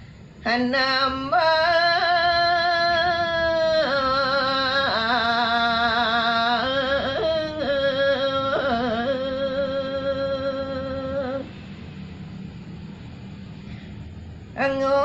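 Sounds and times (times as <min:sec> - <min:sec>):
solo voice singing: 0:00.4 - 0:11.5, 0:14.5 - 0:15.0.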